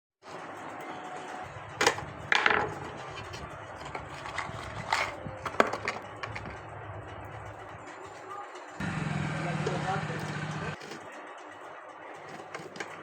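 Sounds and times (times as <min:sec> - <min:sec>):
hard objects knocking and clicking: 0:01.7 - 0:07.5
steady low hum: 0:08.8 - 0:10.8.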